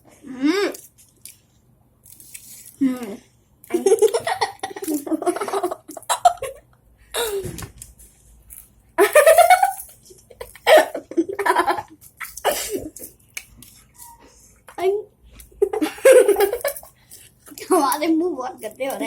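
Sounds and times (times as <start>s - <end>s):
girls laughing and giggling: 3.7s - 6.7s, 9.0s - 13.1s, 15.6s - 17.0s.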